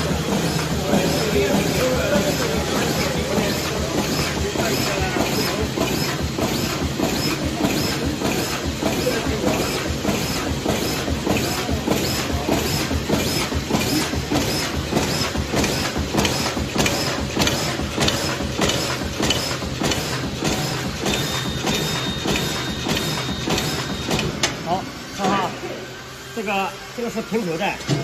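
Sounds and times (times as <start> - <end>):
machine clattering: 0.0 - 25.4.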